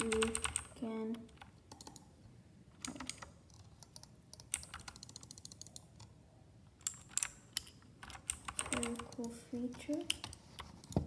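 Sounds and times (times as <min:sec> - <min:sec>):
mechanical keyboard keystrokes: 0:00.0 - 0:00.7, 0:02.8 - 0:05.9, 0:06.8 - 0:09.3.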